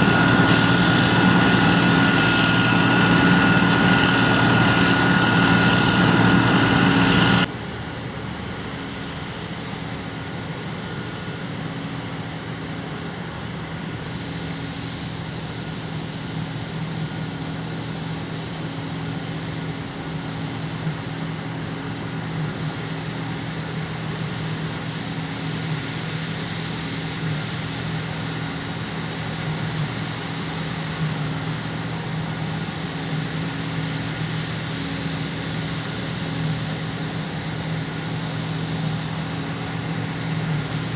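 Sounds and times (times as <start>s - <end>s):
faint high whine: 0.0s - 7.5s
diesel engine running under load: 0.0s - 9.2s, 10.4s - 40.9s.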